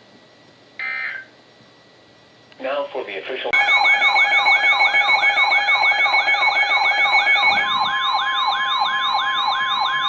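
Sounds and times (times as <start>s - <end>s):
electronic siren wailing: 0.8s - 1.3s, 3.6s - 10.0s.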